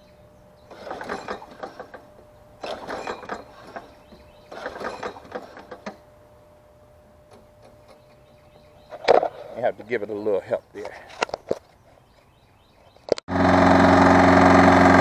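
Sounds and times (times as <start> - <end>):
mower pull-starter rattle: 0.6 - 6.1.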